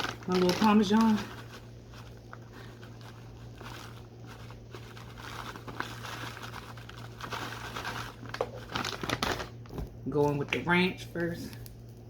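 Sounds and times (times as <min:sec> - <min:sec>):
plastic packaging crinkling: 0:00.0 - 0:12.0
steady low hum: 0:00.0 - 0:12.0.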